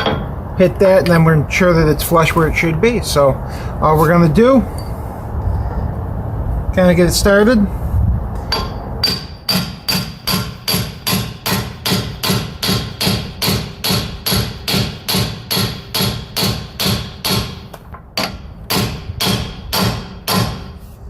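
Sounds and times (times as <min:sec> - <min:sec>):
hammer striking metal driver: 0:00.0 - 0:00.4, 0:08.5 - 0:20.8.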